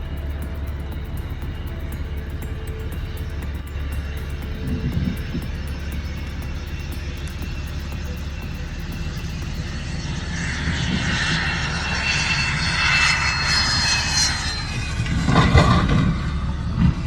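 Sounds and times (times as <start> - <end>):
airplane engine whine: 0.0 - 17.0.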